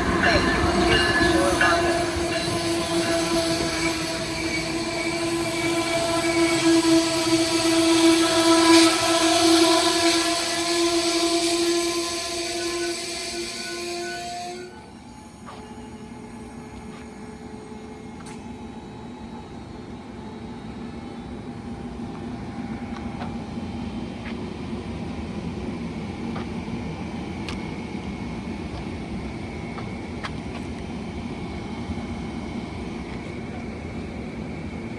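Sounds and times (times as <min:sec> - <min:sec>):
train wheels rumbling on rail: 0:00.0 - 0:34.9.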